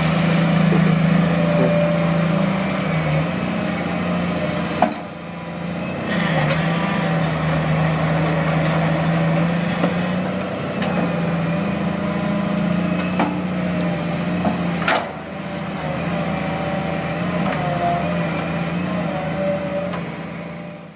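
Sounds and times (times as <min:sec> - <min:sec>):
excavator diesel engine running: 0:00.0 - 0:20.9.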